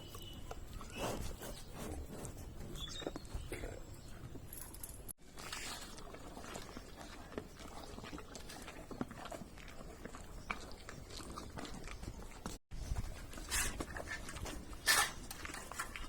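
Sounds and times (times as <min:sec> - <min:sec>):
animal chewing food: 0:05.2 - 0:16.0.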